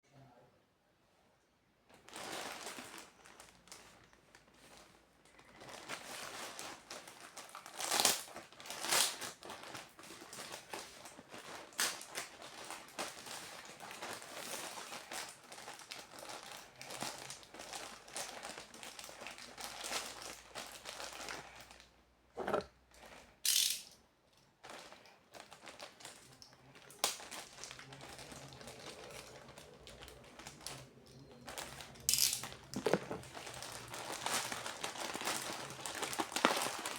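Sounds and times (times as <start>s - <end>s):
packaging crinkling and rustling: 1.9s - 23.7s, 24.4s - 36.9s
sharp packaging crackles: 2.0s - 21.8s, 24.6s - 36.9s.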